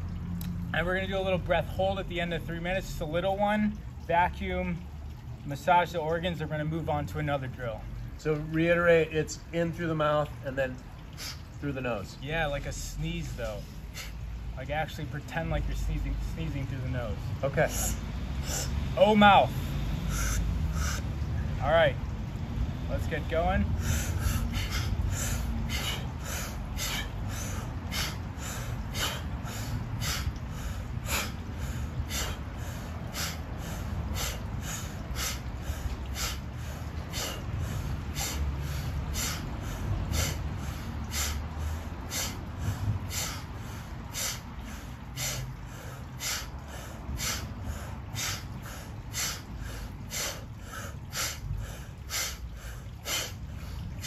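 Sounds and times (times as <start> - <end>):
rapid mouth inhales: 23.8 - 54.0.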